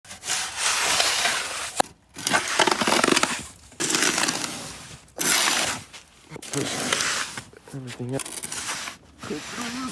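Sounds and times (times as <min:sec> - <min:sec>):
snow shovel scraping through snow: 0:02.4 - 0:07.4, 0:08.5 - 0:09.9.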